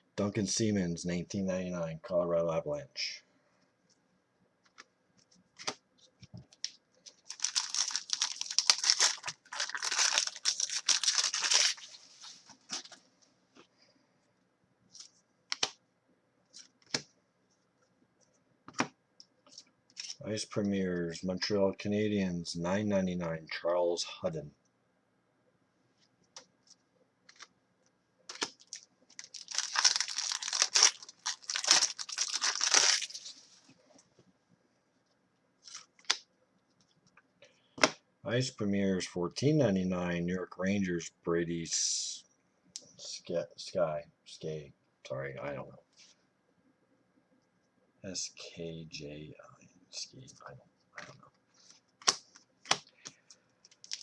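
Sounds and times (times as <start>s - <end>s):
foil wrapper tearing and crinkling: 7.2s - 12.0s, 28.3s - 33.4s, 53.7s - 54.0s
cards clicking: 28.3s - 28.6s.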